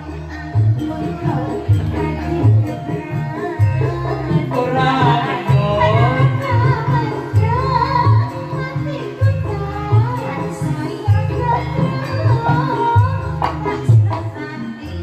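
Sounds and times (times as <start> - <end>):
person singing: 0.0 - 15.0
drum beat: 0.6 - 14.4.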